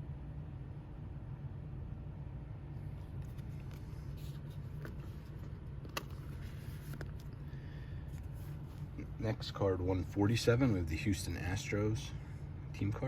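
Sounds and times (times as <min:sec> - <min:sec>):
low background hum: 0:00.0 - 0:13.0
plastic pages rustling: 0:03.0 - 0:08.9.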